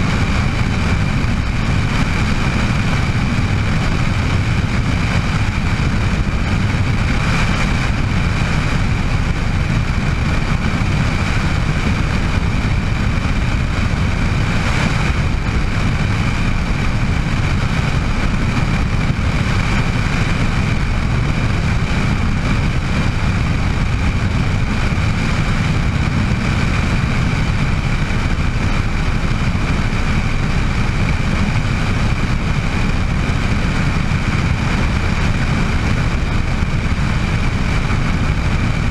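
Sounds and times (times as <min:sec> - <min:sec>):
helicopter rotor and engine drone: 0:00.0 - 0:38.9
high turbine whine: 0:00.0 - 0:38.9.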